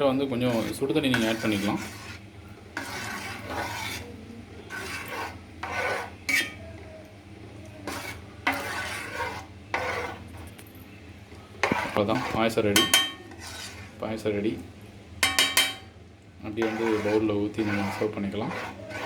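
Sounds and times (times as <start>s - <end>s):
spoon scraping cooking pot: 0.1s - 10.6s, 11.6s - 14.1s, 15.2s - 19.0s.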